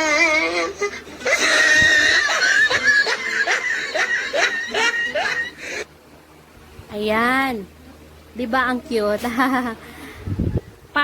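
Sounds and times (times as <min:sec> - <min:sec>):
cartoon-like squeaky laughing: 0:00.0 - 0:05.8.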